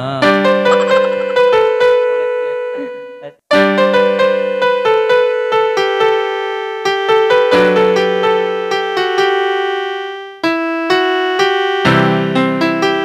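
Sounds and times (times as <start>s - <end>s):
electronic keyboard piano chords: 0.5s - 3.2s.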